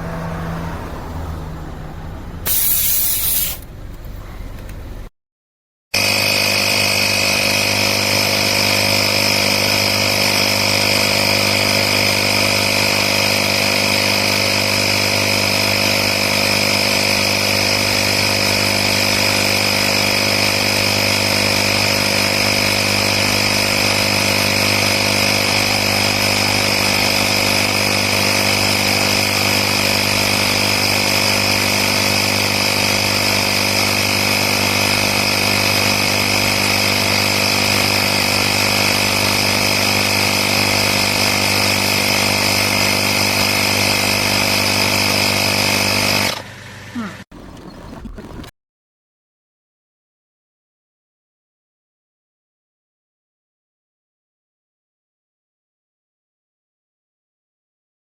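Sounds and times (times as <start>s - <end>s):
air compressor humming: 2.5s - 3.8s.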